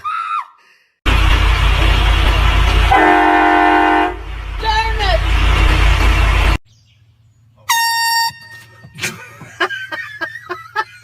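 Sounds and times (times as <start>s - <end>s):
air horn blast: 2.9s - 4.3s, 7.7s - 8.7s.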